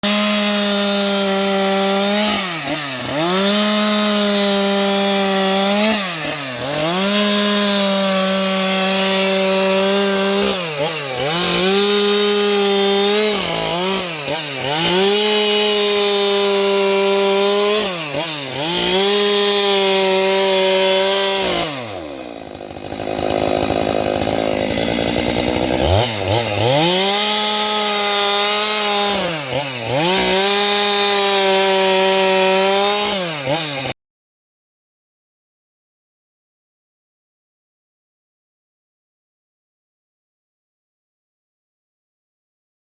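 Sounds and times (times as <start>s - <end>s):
chainsaw sawing wood: 0.0s - 34.0s.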